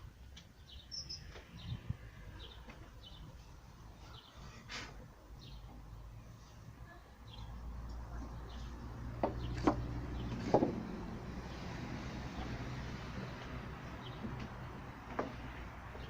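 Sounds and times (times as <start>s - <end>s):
sharp knocks: 9.2s - 10.8s.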